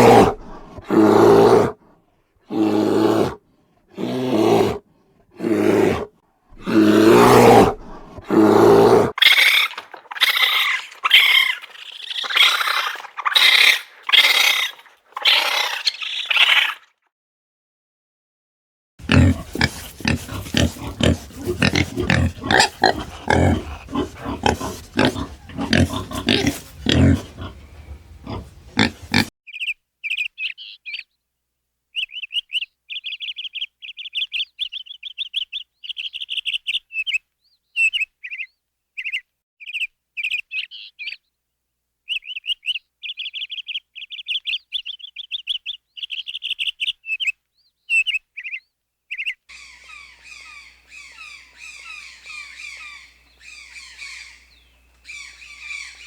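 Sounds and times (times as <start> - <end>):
rough animal noises: 0.0 - 16.9, 19.0 - 31.0, 49.2 - 56.0
bird chirping rapidly: 49.2 - 56.0.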